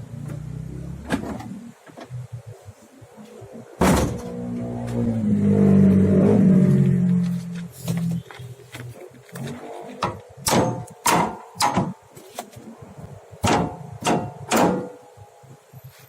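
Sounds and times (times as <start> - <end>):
hammer striking metal: 10.4 - 12.0, 13.4 - 15.0.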